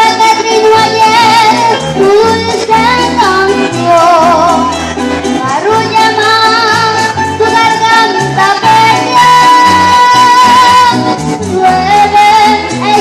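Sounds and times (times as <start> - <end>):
bass: 0.0 - 13.0
girl singing with vibrato: 0.0 - 13.0.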